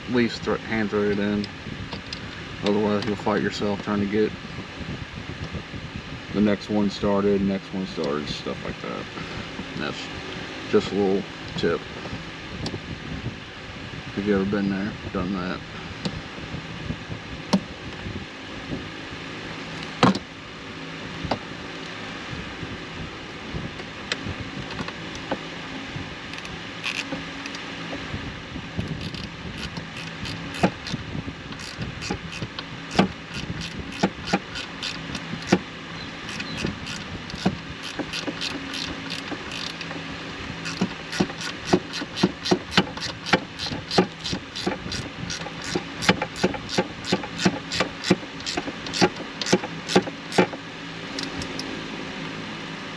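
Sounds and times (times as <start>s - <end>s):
ratchet wrench clicking: 26.3s - 27.6s, 28.8s - 31.0s, 31.6s - 35.6s, 36.3s - 40.0s, 40.6s - 50.6s, 51.2s - 51.7s.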